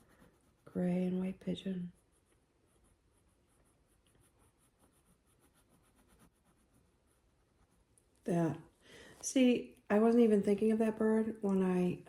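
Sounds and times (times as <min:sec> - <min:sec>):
pencil scratching on paper: 0:00.0 - 0:08.0.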